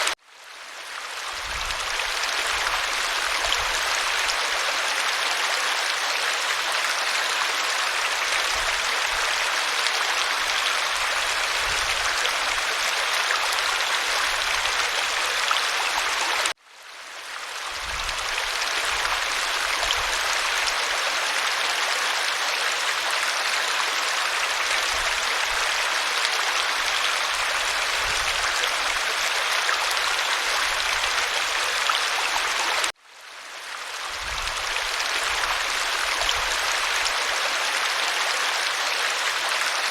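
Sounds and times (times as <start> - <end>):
waterfall rushing: 1.7 - 16.6.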